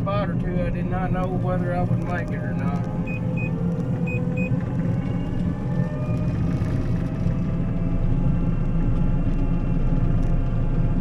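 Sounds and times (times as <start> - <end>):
combine engine running: 0.0 - 11.0
short electronic beeps: 3.0 - 4.5.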